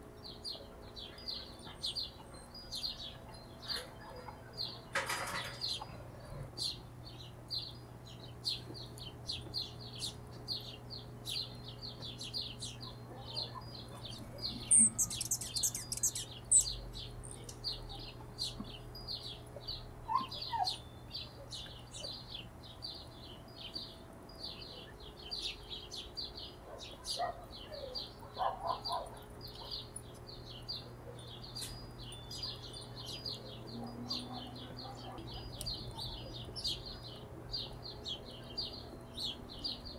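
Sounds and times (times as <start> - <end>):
steady low hum: 0.0 - 39.9
hummingbird chip notes: 5.7 - 39.9
lower bird chirps: 6.6 - 39.9
squeaky twittering: 14.5 - 16.8.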